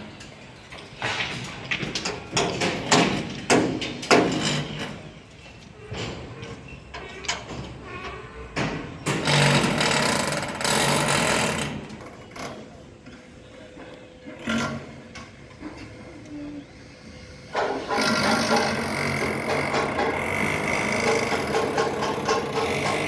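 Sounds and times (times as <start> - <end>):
power tool running: 17.4 - 23.0
scattered knocks: 17.6 - 23.0.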